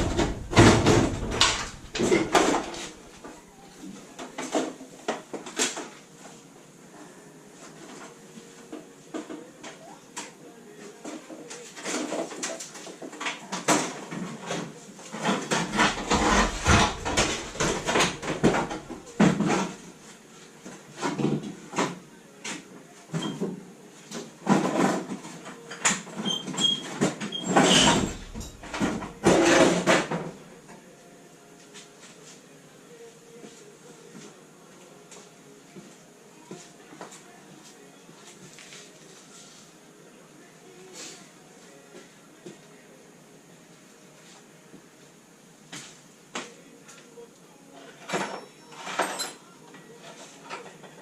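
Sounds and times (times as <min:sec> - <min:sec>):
tools and metal parts clanking: 0:00.0 - 0:03.2, 0:15.1 - 0:19.8, 0:26.0 - 0:30.2, 0:48.0 - 0:49.5.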